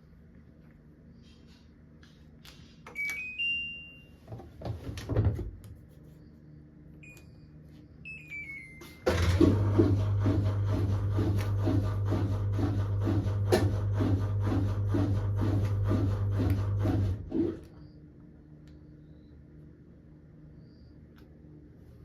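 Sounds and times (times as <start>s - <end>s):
washing machine humming: 0.0s - 22.0s
washing machine panel beeping: 2.9s - 4.3s, 7.0s - 11.1s.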